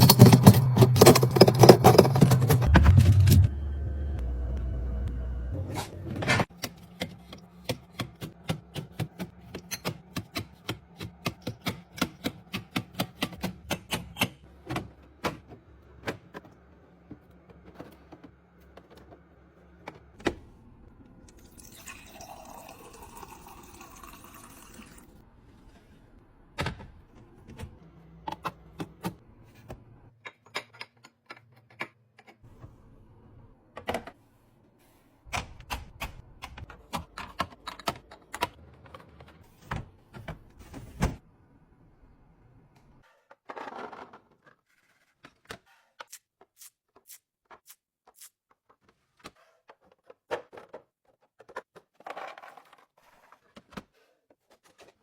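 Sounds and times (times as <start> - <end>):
liquid pouring: 21.3 - 25.2.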